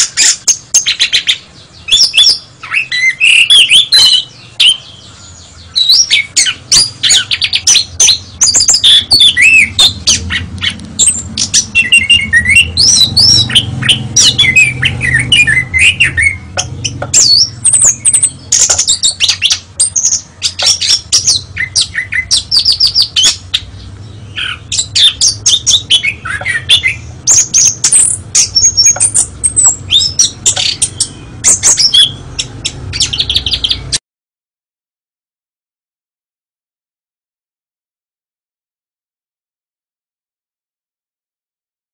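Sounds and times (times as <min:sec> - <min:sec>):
songbird singing varied whistles: 0:00.0 - 0:04.9, 0:05.7 - 0:23.7, 0:24.3 - 0:34.0.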